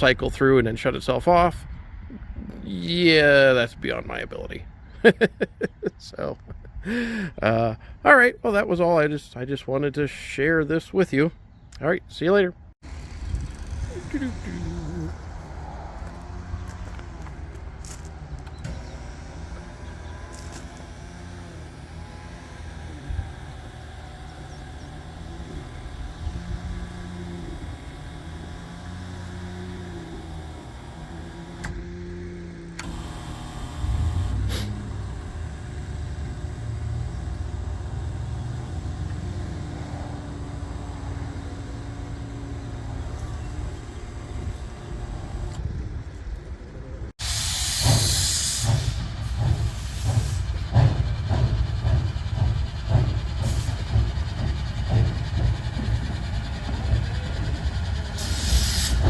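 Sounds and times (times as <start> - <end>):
train rumbling: 12.8 - 31.8, 33.8 - 46.2, 47.2 - 59.0
hiss burst: 47.2 - 56.6, 57.9 - 59.0
rhythmic train clatter: 47.2 - 59.0.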